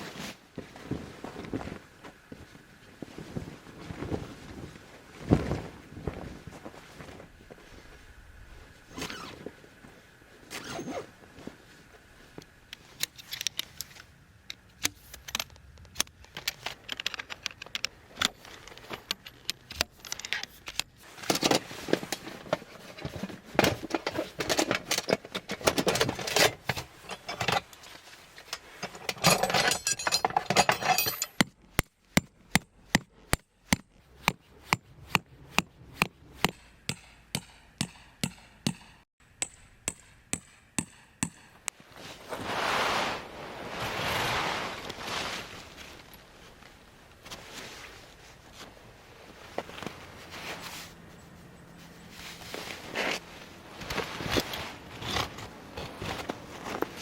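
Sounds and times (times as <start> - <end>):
objects clicking and rattling: 13.0 - 21.5.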